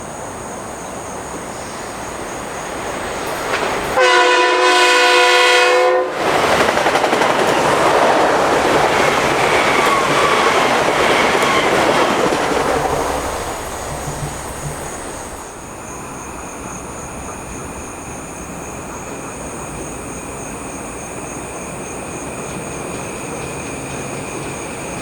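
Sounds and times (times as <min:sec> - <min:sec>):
train wheels rushing on rails: 0:00.0 - 0:25.0
train horn blast: 0:03.9 - 0:06.3.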